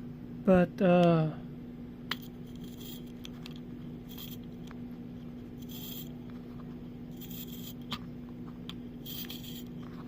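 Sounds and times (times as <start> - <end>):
steady low hum: 0.0 - 10.0
watch crown scratchy rasps: 5.6 - 6.1, 7.2 - 7.8, 9.1 - 9.7.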